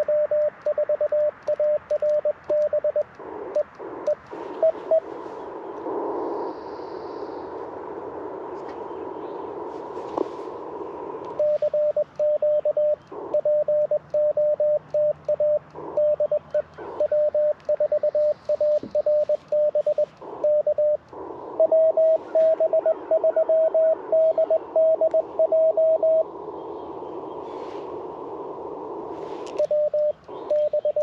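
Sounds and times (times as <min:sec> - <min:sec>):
morse code sidetone: 0:00.0 - 0:05.1, 0:11.3 - 0:26.3, 0:29.5 - 0:31.0
radio band hiss: 0:00.0 - 0:31.0
morse code higher pitch: 0:11.4 - 0:21.0, 0:29.6 - 0:31.0.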